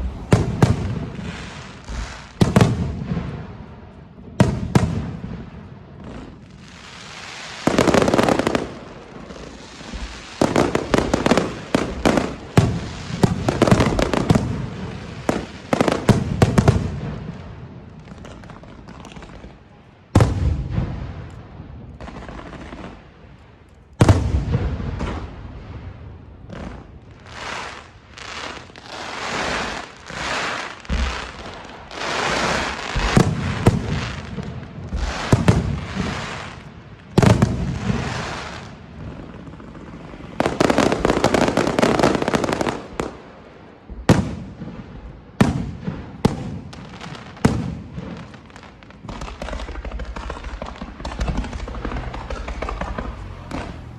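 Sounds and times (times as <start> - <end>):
fireworks hissing and crackling: 0.0 - 53.9
firework shells bursting: 49.2 - 53.9.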